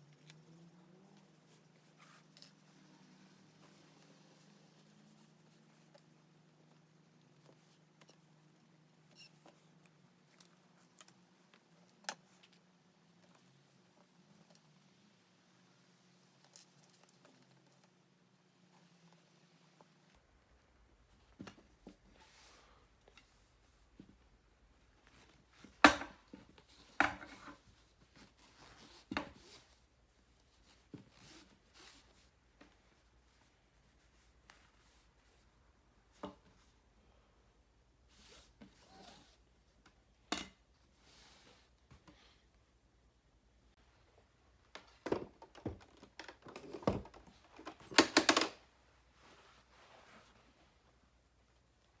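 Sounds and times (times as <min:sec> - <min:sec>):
handling and rustling: 0:43.8 - 0:52.0.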